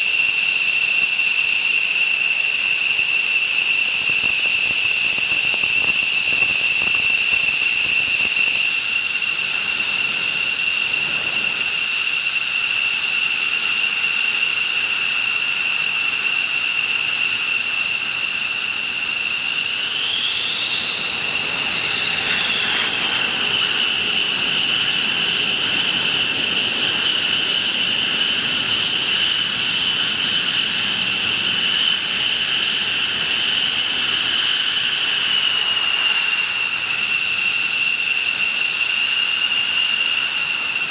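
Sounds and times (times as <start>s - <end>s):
jet engine whining: 0.0s - 40.9s.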